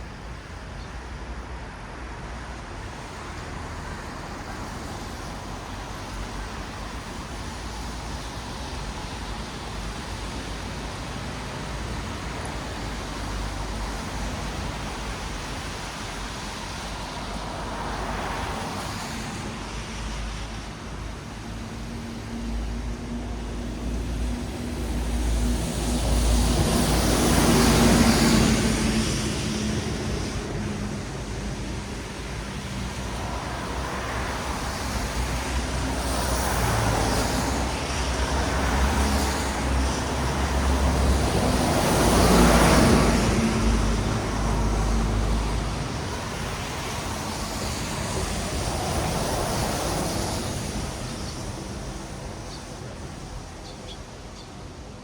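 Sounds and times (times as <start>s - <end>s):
tyres hissing on wet road: 0.0s - 55.0s
vehicle engine hum passing: 21.4s - 53.4s
vehicle passing: 22.4s - 51.3s.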